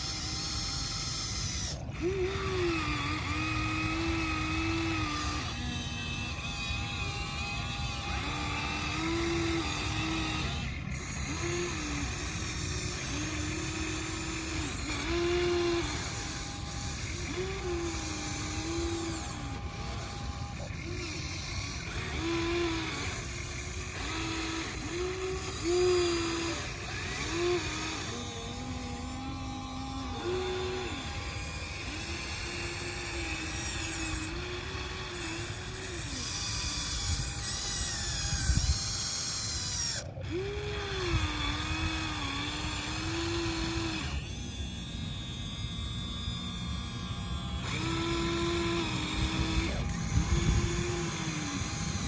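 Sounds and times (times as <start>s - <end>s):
electric motors whining: 0.0s - 52.0s.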